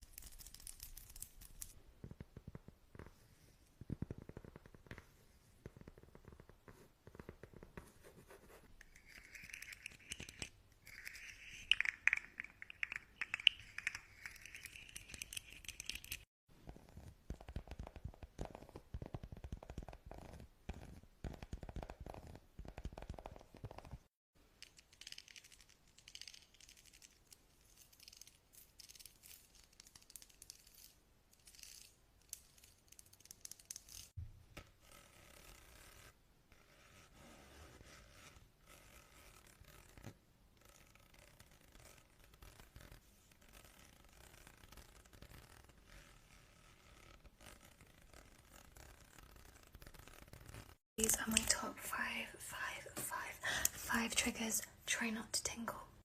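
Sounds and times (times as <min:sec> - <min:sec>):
scratching and crinkling of objects: 0:38.2 - 0:51.7.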